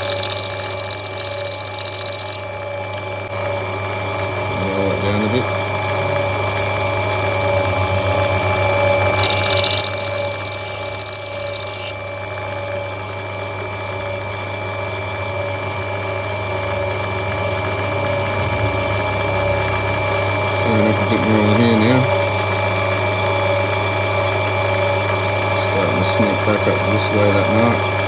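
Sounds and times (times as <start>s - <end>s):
stone grinding on wheel: 0.0s - 2.5s, 9.2s - 12.0s
grinding wheel motor hum: 0.0s - 28.0s.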